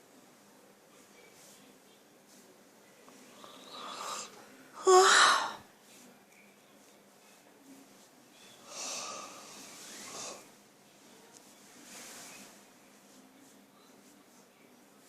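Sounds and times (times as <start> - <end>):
person breathing in sleep: 8.6 - 10.4.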